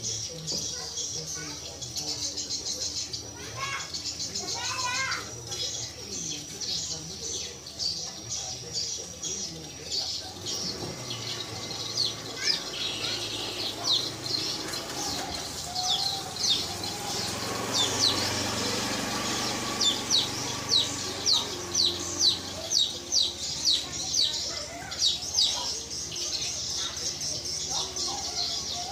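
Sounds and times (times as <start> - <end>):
high downward-sweeping bird calls: 0.0 - 28.9.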